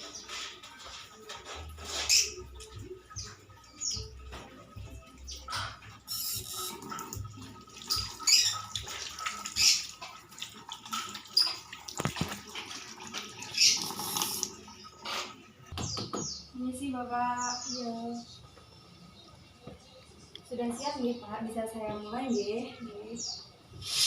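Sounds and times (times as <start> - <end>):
tap water splashing on hands: 6.8 - 14.5.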